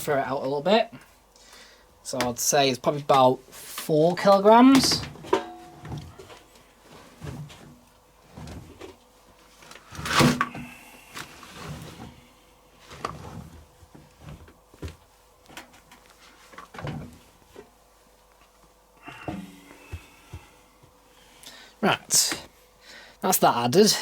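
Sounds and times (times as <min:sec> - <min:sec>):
laundry thumps and rustles: 0:04.6 - 0:10.5, 0:12.8 - 0:17.8.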